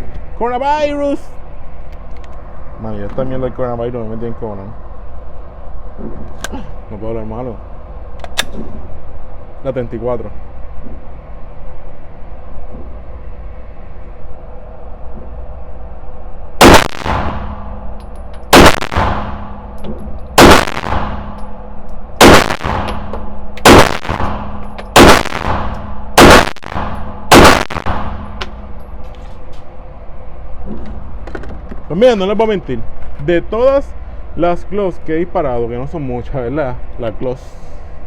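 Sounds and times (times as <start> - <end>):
pistol shots with ringing tail: 16.6 - 17.8, 18.5 - 19.8, 20.4 - 21.6, 22.2 - 28.4.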